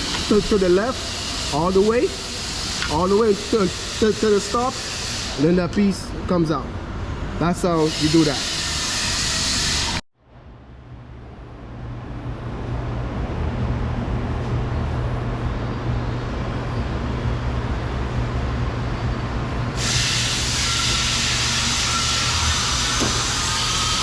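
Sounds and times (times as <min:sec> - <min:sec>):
hiss: 0:19.8 - 0:24.0.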